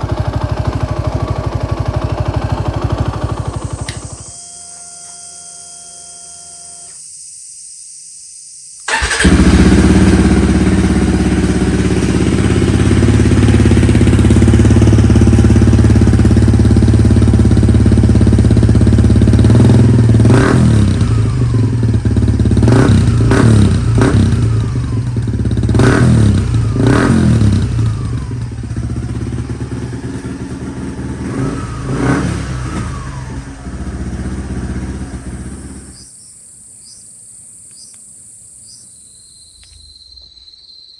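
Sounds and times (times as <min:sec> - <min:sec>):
motorcycle engine revving: 0:00.0 - 0:04.4, 0:08.9 - 0:36.1.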